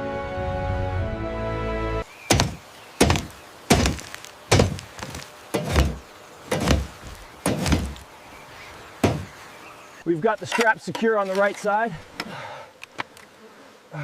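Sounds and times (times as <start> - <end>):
background music: 0.0 - 2.1
heavy chopping thunks: 2.3 - 8.0, 9.0 - 9.4.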